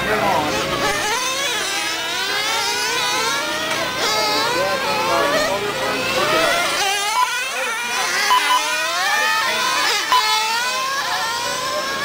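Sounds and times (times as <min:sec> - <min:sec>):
rc car engines revving: 0:00.0 - 0:12.0
short beeps: 0:08.2 - 0:08.8, 0:10.1 - 0:10.3.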